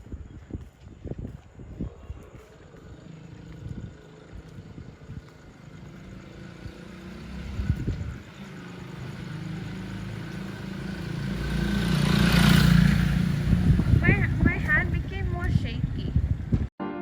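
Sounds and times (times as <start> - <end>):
vehicle engine running: 3.0 - 16.0
low rumbling: 12.9 - 16.7.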